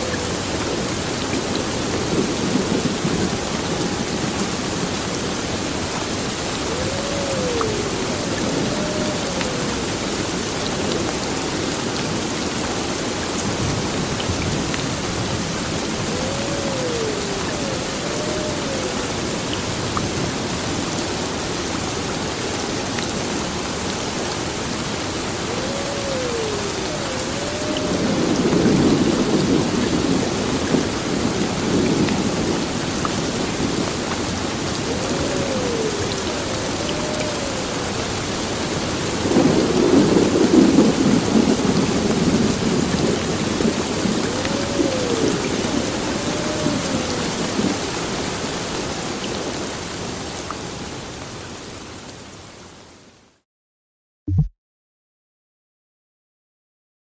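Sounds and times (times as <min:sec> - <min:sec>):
heavy rain falling: 0:00.0 - 0:53.0
thunder rumbling: 0:05.5 - 0:11.1, 0:25.4 - 0:47.9
short rising and falling tones: 0:54.3 - 0:54.5.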